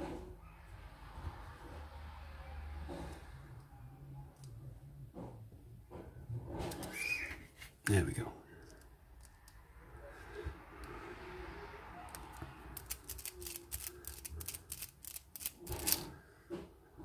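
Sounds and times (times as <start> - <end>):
small metal clicks and clatter: 12.2 - 16.1.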